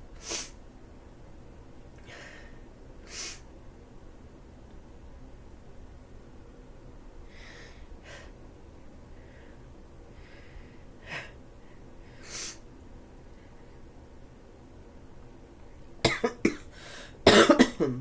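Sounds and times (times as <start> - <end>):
person sniffing: 0.2 - 0.6, 3.1 - 3.4
congested breathing: 16.7 - 17.2.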